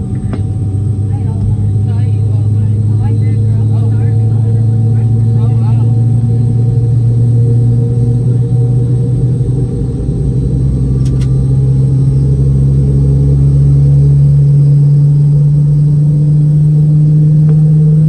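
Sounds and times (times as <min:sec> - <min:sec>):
low rumble: 0:00.0 - 0:18.0
faint click: 0:11.0 - 0:11.4.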